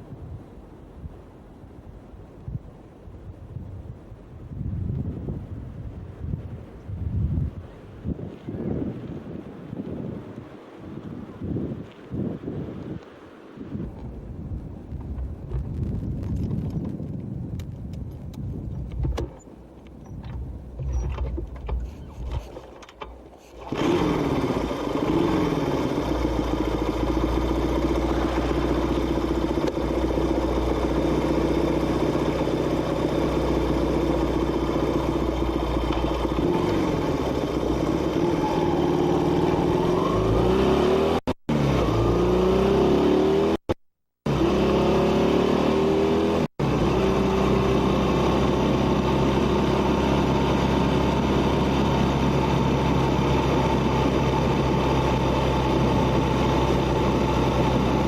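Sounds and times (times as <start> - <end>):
motorcycle engine running: 23.6 - 43.5, 44.3 - 58.0.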